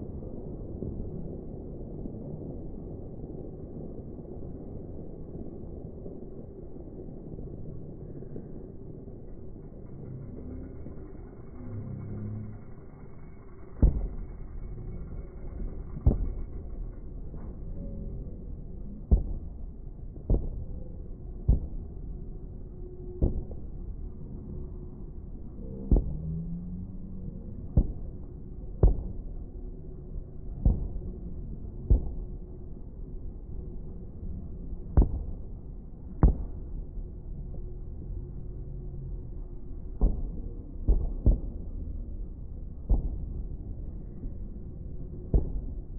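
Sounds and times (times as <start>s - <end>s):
steady low rumble: 0.0s - 45.9s
fireworks booming: 13.8s - 14.3s.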